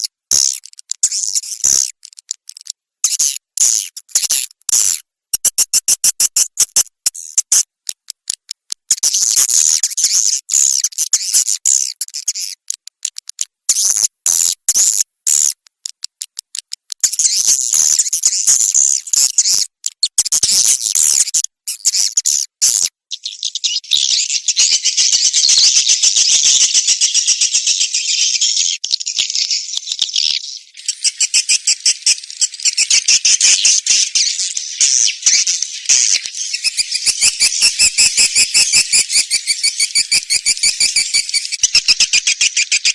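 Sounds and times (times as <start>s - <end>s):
swiftlet chirps: 35.4s - 42.9s.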